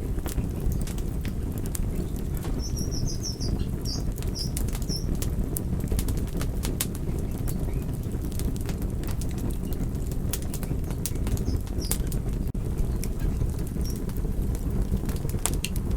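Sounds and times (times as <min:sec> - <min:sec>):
campfire crackling and popping: 0:00.0 - 0:15.9
high chirps: 0:02.0 - 0:05.1.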